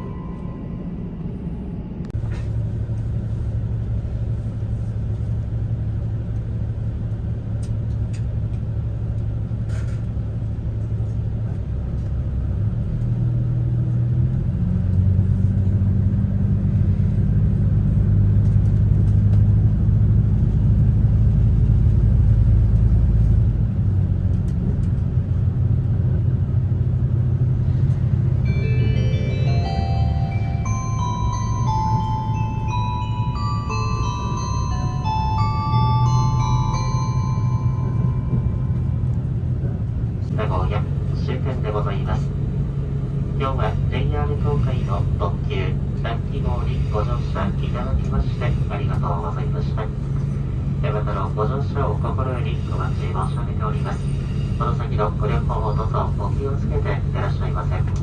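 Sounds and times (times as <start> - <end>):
train rumble and hum: 0.0 - 58.0
on-board chime: 28.4 - 39.1.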